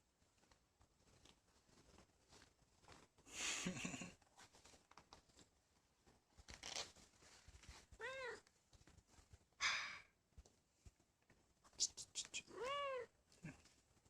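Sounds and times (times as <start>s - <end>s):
cat meowing: 8.0s - 8.5s, 12.5s - 13.1s.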